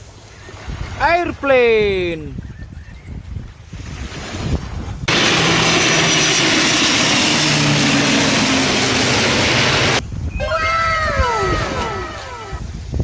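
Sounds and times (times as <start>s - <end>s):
jet-like engine rush: 5.1s - 10.0s
falling whistle-like tones: 10.3s - 12.6s.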